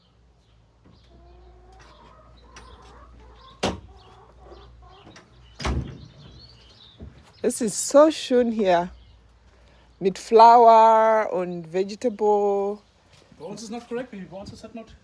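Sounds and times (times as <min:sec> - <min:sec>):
chickens clucking: 0:00.8 - 0:07.4.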